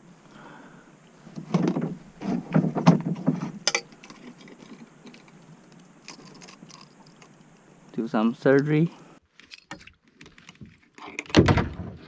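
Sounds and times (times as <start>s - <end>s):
knocks and thumps on kayak hull: 1.4s - 3.6s
rattles and light clicks: 1.4s - 7.7s.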